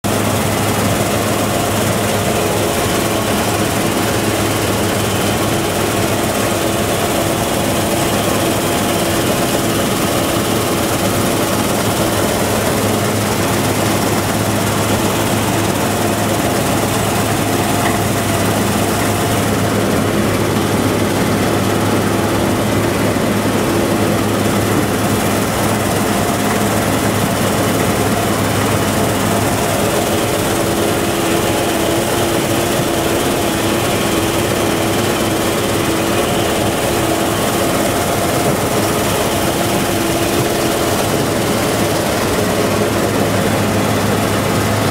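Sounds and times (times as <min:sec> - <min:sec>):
combine harvester running: 0:00.0 - 0:44.9.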